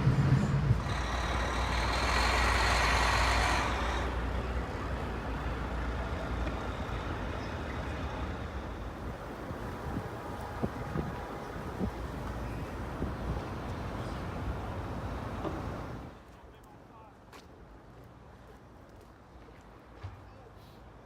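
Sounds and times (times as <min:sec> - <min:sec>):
large vehicle rumbling: 0:00.0 - 0:16.2.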